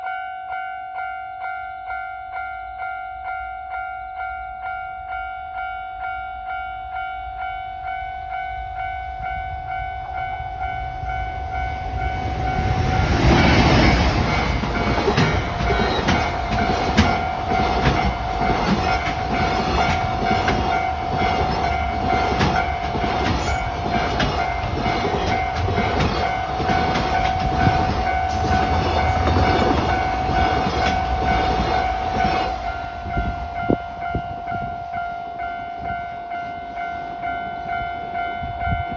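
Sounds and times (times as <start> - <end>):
electric locomotive passing: 0.0 - 38.9
level-crossing alarm ringing: 0.0 - 38.9
train wheels clattering over joints: 12.9 - 32.6.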